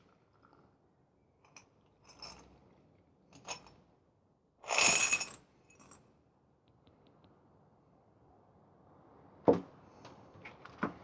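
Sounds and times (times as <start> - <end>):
metal bolts clinking on glass jar: 1.5 - 2.5, 4.6 - 6.0.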